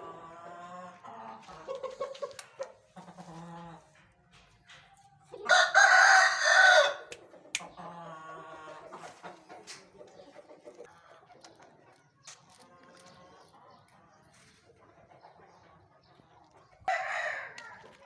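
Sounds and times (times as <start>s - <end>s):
rooster crowing: 5.5s - 7.1s, 16.9s - 17.9s.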